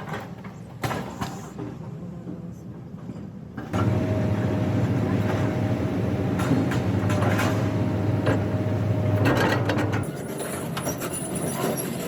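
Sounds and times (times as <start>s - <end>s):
heavy machinery engine hum: 3.7s - 12.0s.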